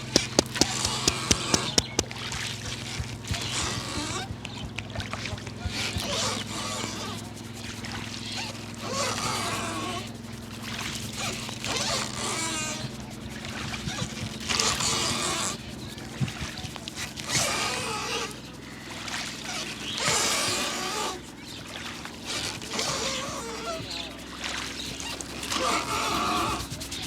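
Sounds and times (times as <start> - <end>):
sharp slaps: 0.0 - 4.9
hands rubbing scalp and hair: 0.0 - 6.4, 25.7 - 27.0
steady low hum: 0.0 - 7.9.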